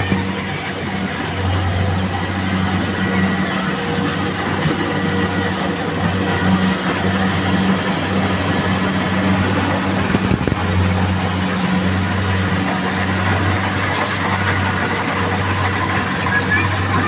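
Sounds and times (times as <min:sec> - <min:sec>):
combine harvester engine hum: 0:00.0 - 0:17.0.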